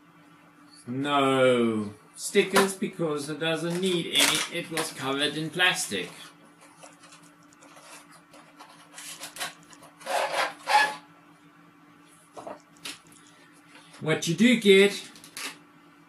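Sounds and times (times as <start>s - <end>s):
cardboard rubbing and scraping: 6.6s - 11.0s.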